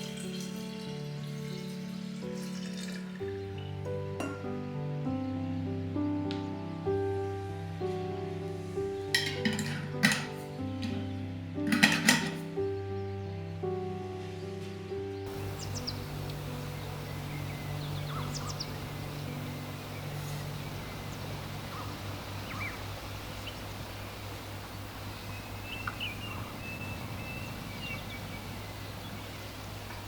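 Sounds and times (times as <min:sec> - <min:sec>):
birds calling: 0:15.3 - 0:30.0
low hum and hiss: 0:15.3 - 0:30.0.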